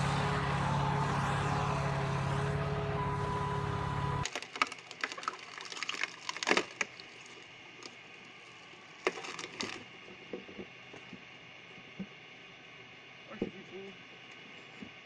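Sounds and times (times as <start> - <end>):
small wood snaps: 4.2 - 7.1, 9.0 - 9.8
wood cracking and splintering: 4.2 - 10.0.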